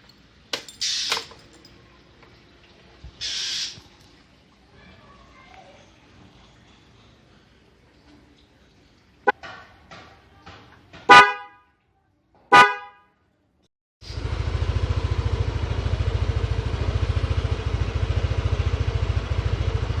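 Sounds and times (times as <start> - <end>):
shrill scooter horn: 11.1 - 11.6, 12.5 - 13.1
scooter engine idling: 14.0 - 20.0.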